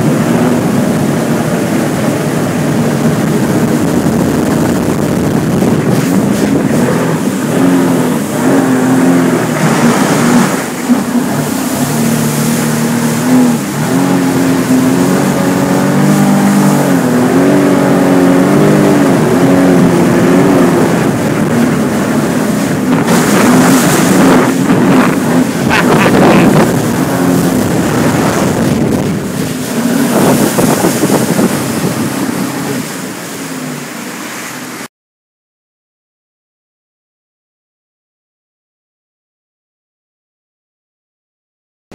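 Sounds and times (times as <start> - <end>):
wind on microphone: 0.0 - 33.4
watercraft engine running: 0.0 - 34.9.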